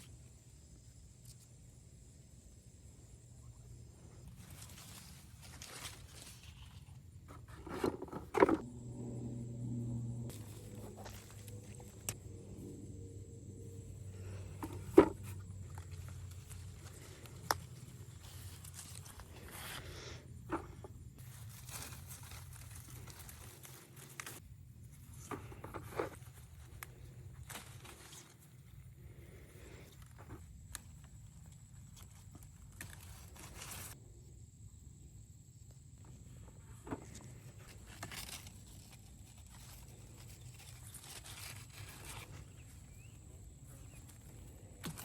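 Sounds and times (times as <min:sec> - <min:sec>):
plant leaves rustling: 0:04.0 - 0:12.7, 0:13.7 - 0:28.6, 0:31.6 - 0:34.0, 0:37.1 - 0:45.0
stems snapping: 0:15.7 - 0:19.2.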